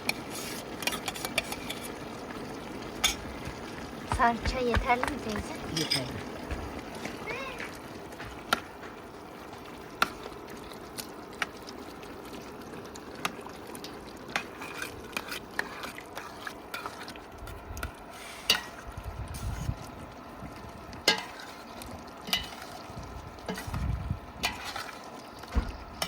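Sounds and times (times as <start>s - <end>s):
spoon stirring stew in a pot: 0.0s - 20.0s, 21.0s - 23.8s, 24.4s - 26.0s
steady sizzle: 0.0s - 26.0s
spoon clinking against pot: 5.7s - 6.1s.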